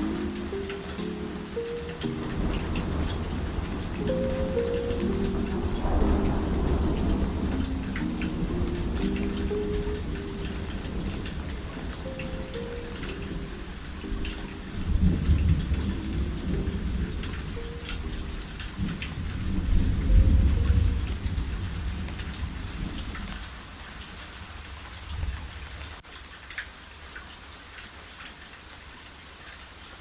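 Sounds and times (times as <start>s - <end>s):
soft low melody: 0.0s - 23.4s
steady rain pattering: 0.0s - 30.0s
thunder rumbling: 2.0s - 23.5s.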